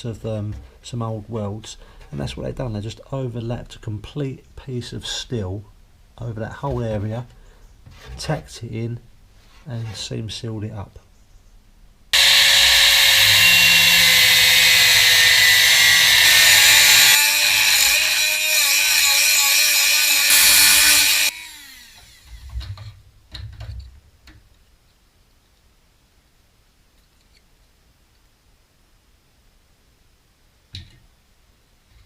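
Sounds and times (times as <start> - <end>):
angle grinder cutting steel: 12.2 - 22.4.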